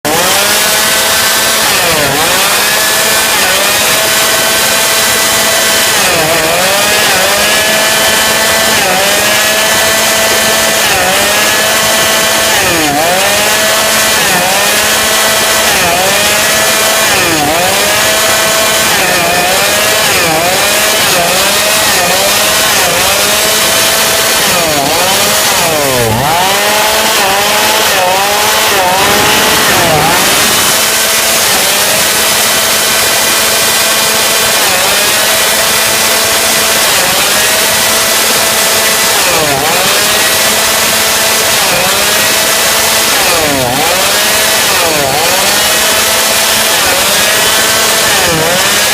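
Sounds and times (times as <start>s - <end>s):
chainsaw revving at high speed: 0.0s - 48.9s.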